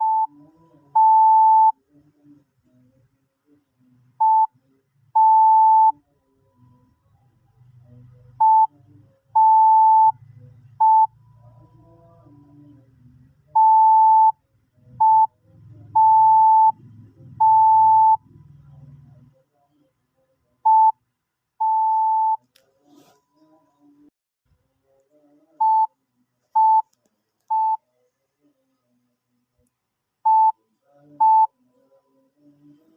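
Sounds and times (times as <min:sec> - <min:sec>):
faint low hum: 0:00.0 - 0:32.9
morse code beeps: 0:16.0 - 0:16.8, 0:17.4 - 0:18.2.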